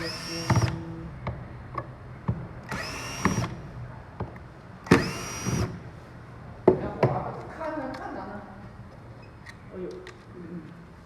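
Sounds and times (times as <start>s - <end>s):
electric drill whining: 0.0s - 0.8s, 2.7s - 3.6s, 4.9s - 5.8s.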